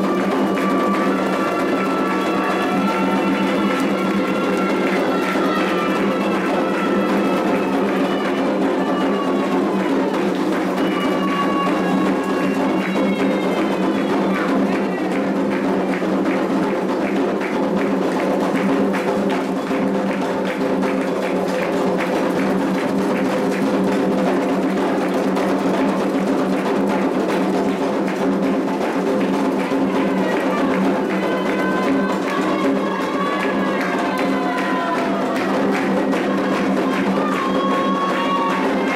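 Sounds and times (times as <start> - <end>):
hand drums: 0.0 - 38.9
wood block beat: 0.0 - 38.9
voices singing: 29.7 - 38.9.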